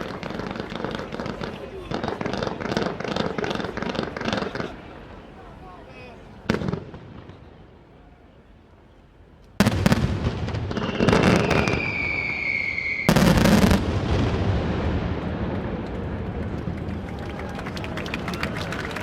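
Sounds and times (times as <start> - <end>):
firework bangs and crackle: 0.0 - 5.4, 9.6 - 19.0
firework rumble: 0.0 - 7.8, 9.6 - 19.0
firework whistling tone: 10.7 - 13.8.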